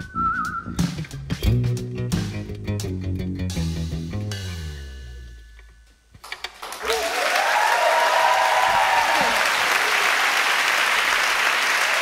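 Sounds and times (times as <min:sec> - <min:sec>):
audience applauding: 0:06.3 - 0:12.0
cheers and whoops: 0:06.8 - 0:10.4.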